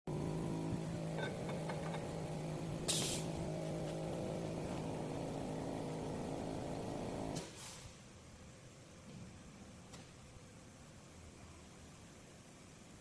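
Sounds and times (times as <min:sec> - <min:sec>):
welding machine humming: 0:00.1 - 0:07.4
sharp hiss of air: 0:02.8 - 0:03.4, 0:07.3 - 0:08.1.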